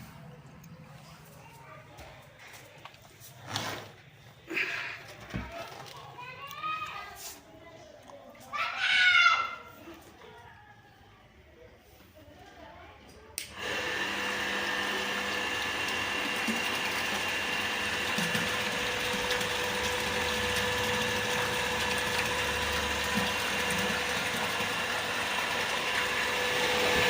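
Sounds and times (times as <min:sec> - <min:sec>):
electric water pump whining: 0:13.5 - 0:27.0.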